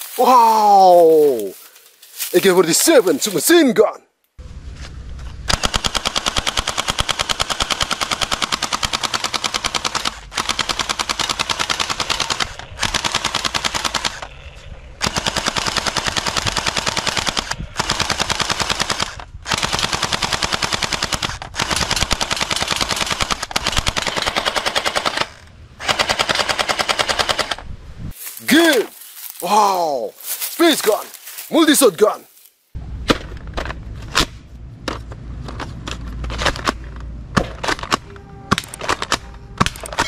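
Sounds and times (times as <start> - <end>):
toy gun firing rapid bursts: 5.6 - 14.2, 15.0 - 27.6.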